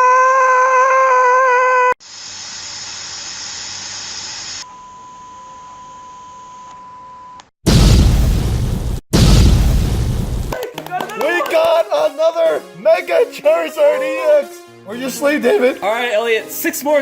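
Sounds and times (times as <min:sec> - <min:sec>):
hiss: 0:02.0 - 0:04.6
loud explosion boom: 0:07.6 - 0:10.6.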